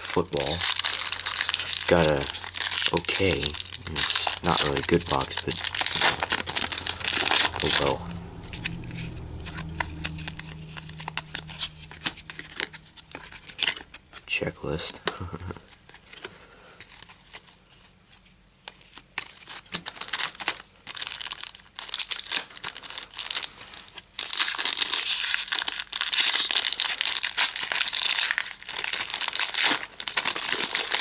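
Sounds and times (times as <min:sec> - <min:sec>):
foil wrapper crinkling: 0:00.0 - 0:06.9.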